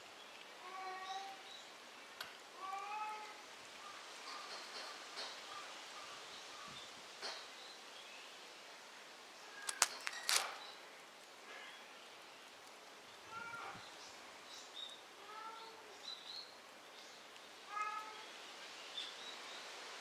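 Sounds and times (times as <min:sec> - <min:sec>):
sharp cracks or knocks: 0:09.6 - 0:10.6.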